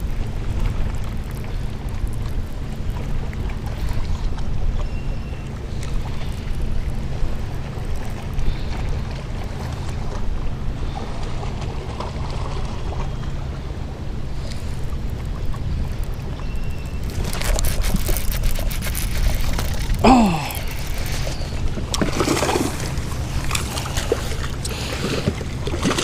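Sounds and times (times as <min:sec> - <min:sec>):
water splashing beside a kayak: 0:00.0 - 0:26.0
wind rumbling on microphone: 0:00.0 - 0:26.0
short falling vocal sound: 0:20.0 - 0:20.7.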